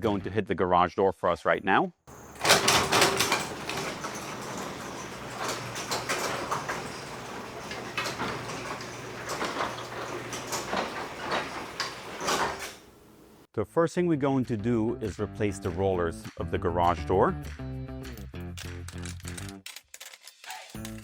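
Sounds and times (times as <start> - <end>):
garage door clicks and rattles: 2.1 - 13.4
garage door opener motor hum: 2.1 - 13.4.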